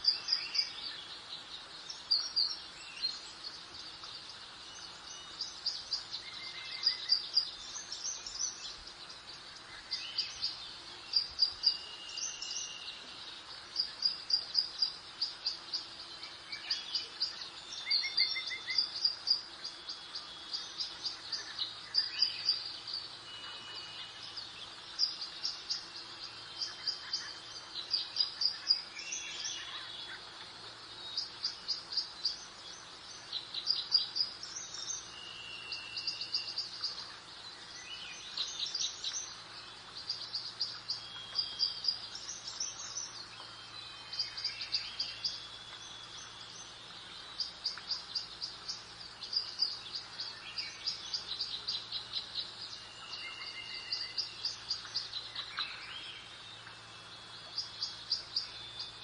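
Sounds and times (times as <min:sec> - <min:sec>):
soft background hiss: 0:00.0 - 0:59.0
songbirds trilling: 0:00.0 - 0:59.0
whistled bird notes: 0:40.0 - 0:56.8.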